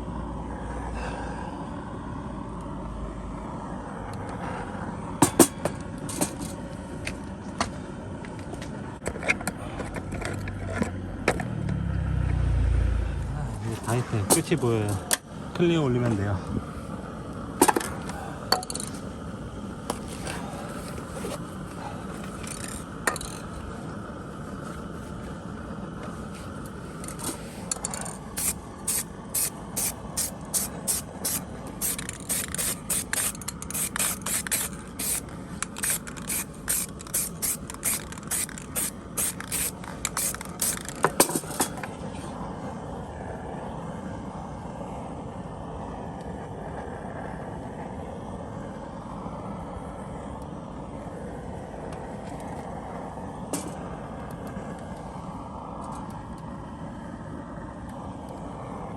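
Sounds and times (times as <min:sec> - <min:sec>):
low background hum: 0:00.0 - 0:58.9
spray gun hissing bursts: 0:26.9 - 0:41.8.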